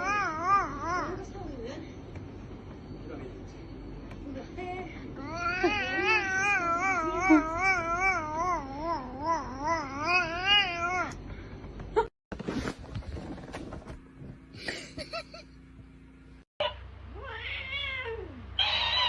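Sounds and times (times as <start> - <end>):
cat yowling: 17.2 - 19.0.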